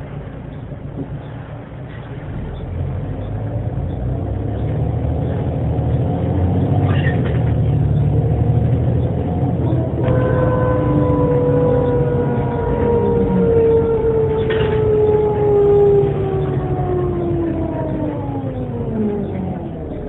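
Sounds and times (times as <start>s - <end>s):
bus engine rumbling: 0.0s - 20.0s.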